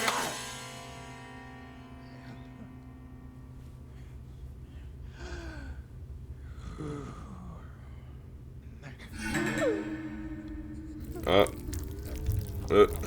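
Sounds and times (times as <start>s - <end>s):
low steady hum: 1.9s - 13.0s
person gasping: 11.0s - 13.0s.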